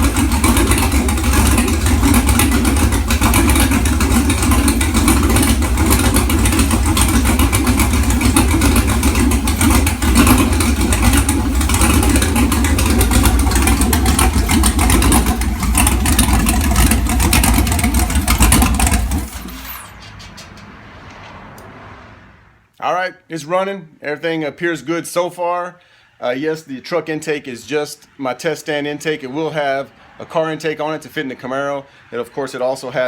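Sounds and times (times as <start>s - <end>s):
engine running: 0.0s - 22.8s.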